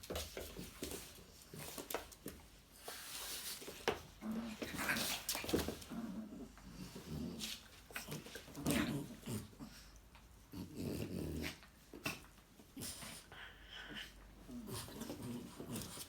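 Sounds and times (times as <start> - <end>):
dogs growling in play: 3.8 - 16.0.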